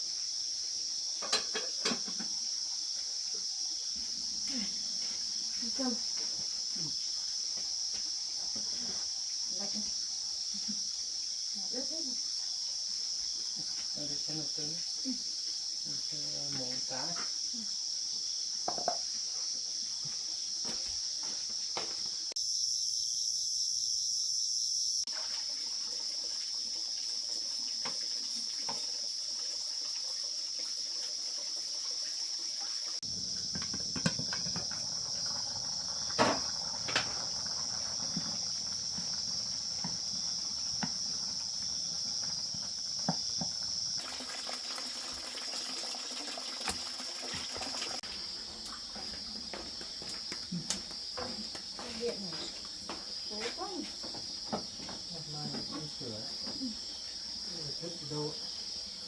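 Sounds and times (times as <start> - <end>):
crickets chirring: 0.0 - 59.0
water splashing: 33.0 - 49.1.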